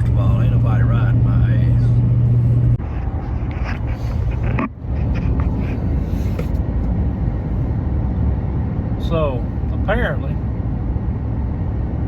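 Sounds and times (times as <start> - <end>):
low hum: 0.0 - 9.7
car road and engine rumble: 0.0 - 12.0.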